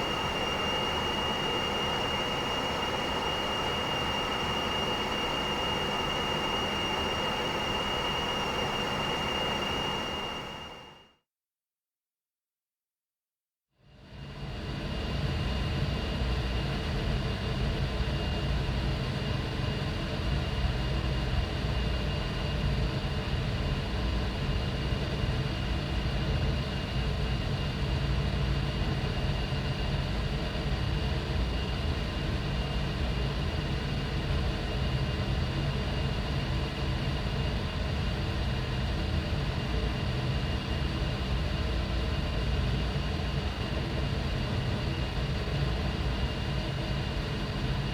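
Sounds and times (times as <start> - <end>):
air duct rumble: 0.0 - 10.8
thin high whine: 0.0 - 11.0.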